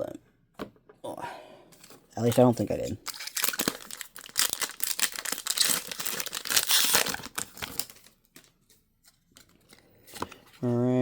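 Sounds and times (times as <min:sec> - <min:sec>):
foil wrapper tearing and crinkling: 0:03.0 - 0:08.1.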